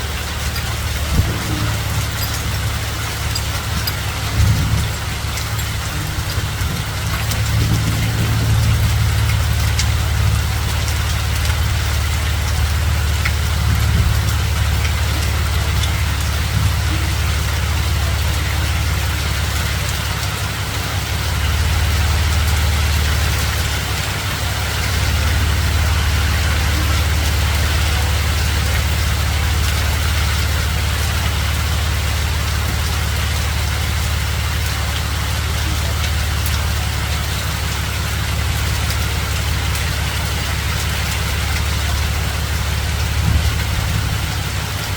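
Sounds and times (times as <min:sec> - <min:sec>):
low rumble: 0:00.0 - 0:20.2, 0:21.1 - 0:44.9
hailstones striking hard surfaces: 0:00.0 - 0:44.9.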